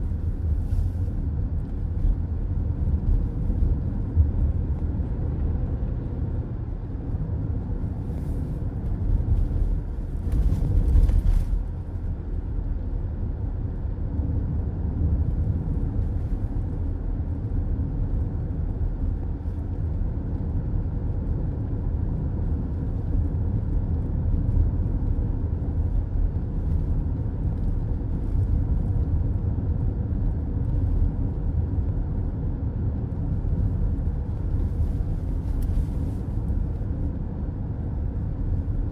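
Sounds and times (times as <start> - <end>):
tyre and road noise in car: 0.0 - 38.9.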